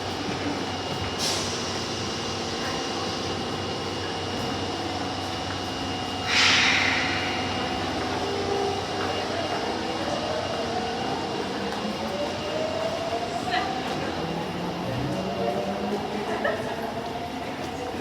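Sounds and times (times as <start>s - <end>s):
subway car rumble: 0.0s - 18.0s
air hissing: 6.2s - 8.9s.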